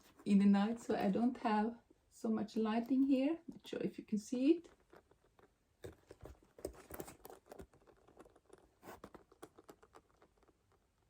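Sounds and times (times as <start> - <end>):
handbag clicks and rustles: 4.6 - 11.0.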